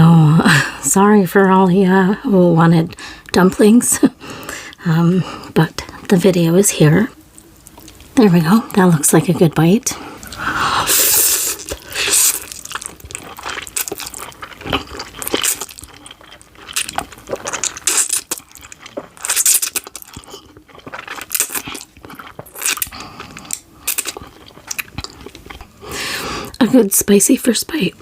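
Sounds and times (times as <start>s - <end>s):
wet chewing: 7.4s - 8.1s, 9.4s - 26.6s
slurping noodles: 10.2s - 16.2s.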